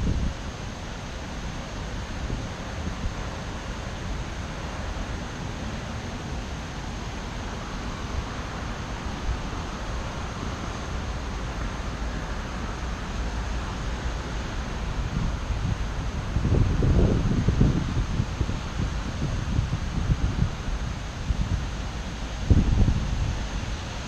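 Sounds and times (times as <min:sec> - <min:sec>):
typhoon wind hissing: 0:00.0 - 0:24.0
wind buffeting microphone: 0:15.0 - 0:23.7.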